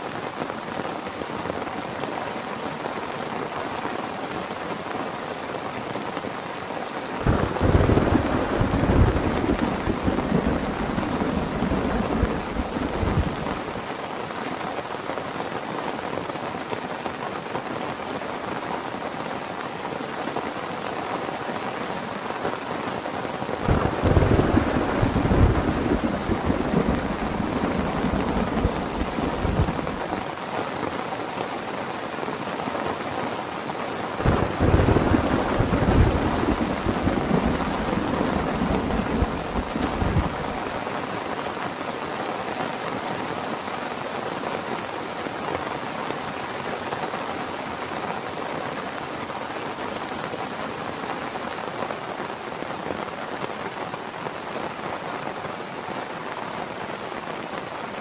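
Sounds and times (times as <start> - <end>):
heavy rain: 0.0 - 58.0
thunder rumbling: 7.2 - 13.8, 23.6 - 30.2, 34.2 - 40.8.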